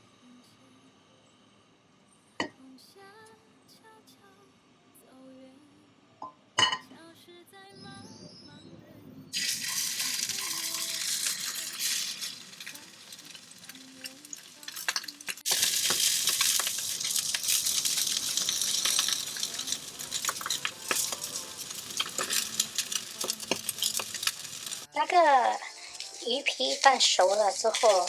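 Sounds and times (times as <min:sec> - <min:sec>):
fish sizzling in hot oil: 0:09.4 - 0:28.0.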